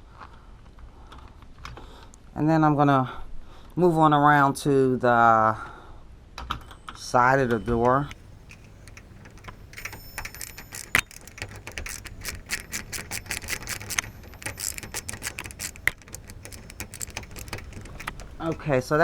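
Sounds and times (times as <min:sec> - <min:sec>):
screwdriver removing screws: 0:07.4 - 0:18.8
metallic clicks of lock hardware: 0:07.4 - 0:19.0.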